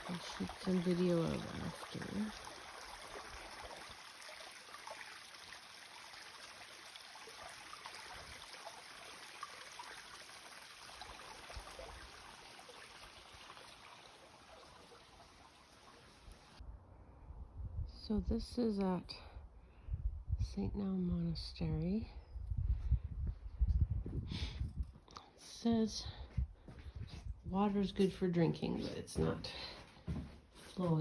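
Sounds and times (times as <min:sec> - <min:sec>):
stream trickling: 0:00.0 - 0:16.6.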